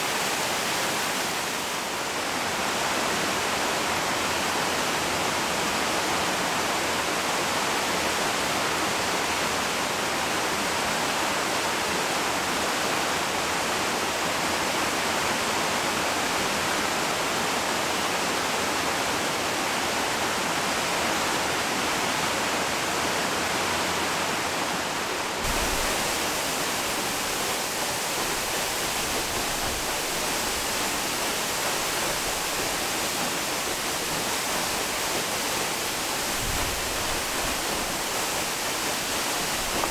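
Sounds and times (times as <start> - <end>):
waterfall rushing: 0.0 - 3.3, 24.0 - 39.9.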